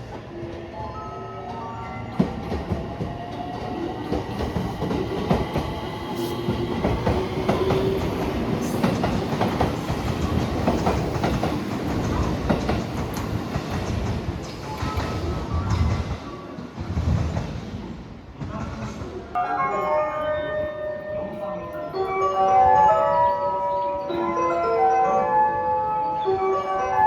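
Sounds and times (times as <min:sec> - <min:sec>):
low train rumble: 0:00.0 - 0:19.4
train wheels clattering: 0:02.2 - 0:19.4.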